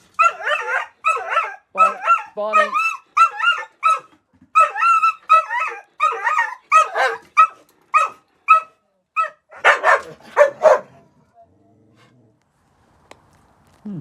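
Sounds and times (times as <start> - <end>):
dog barking and yipping: 0.0 - 11.0.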